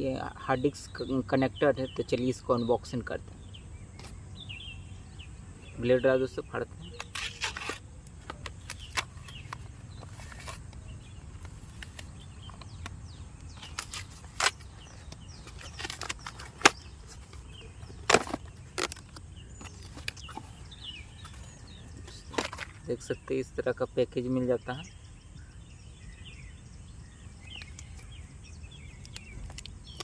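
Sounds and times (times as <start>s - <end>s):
blade cutting packaging: 7.0s - 10.8s, 11.4s - 12.6s, 13.4s - 22.9s.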